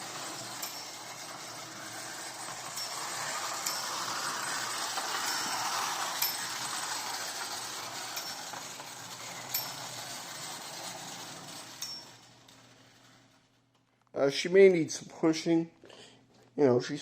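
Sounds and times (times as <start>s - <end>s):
clockwork toy train whirring: 0.0s - 13.5s.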